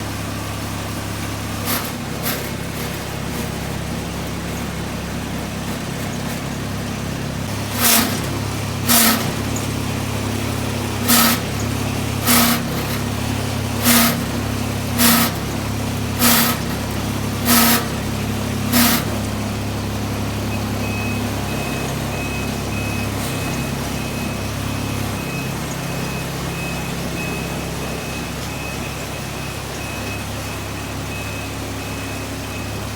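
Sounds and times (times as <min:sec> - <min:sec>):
machine humming: 0:00.0 - 0:32.9
faint high beeps: 0:20.5 - 0:32.8.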